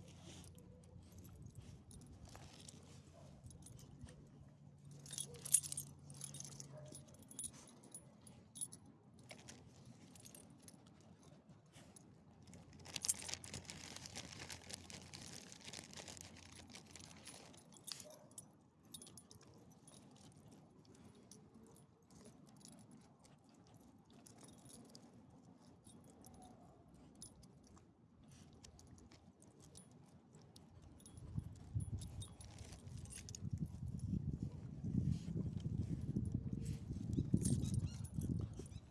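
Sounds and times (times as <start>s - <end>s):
dog tags jingling: 0.2s - 9.5s, 16.0s - 20.3s, 30.8s - 38.9s.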